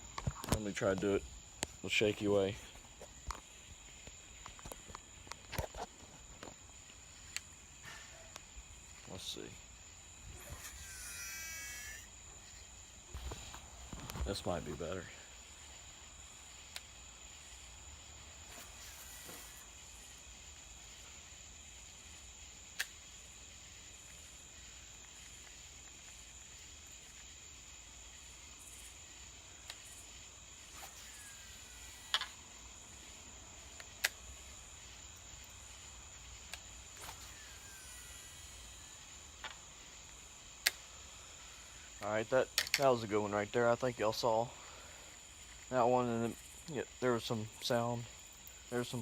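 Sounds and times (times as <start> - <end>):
crickets trilling: 0.0 - 49.0
reel spool whine: 10.2 - 14.0, 18.5 - 21.2, 28.2 - 33.1, 36.8 - 39.9.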